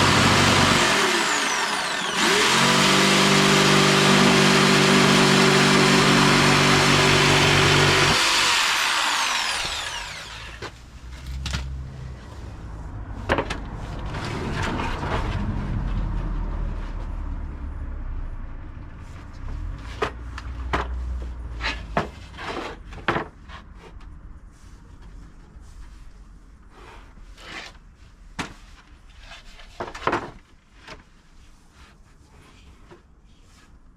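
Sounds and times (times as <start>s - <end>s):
power tool whining: 0.0s - 10.8s
knocks and light clatter: 29.8s - 31.1s.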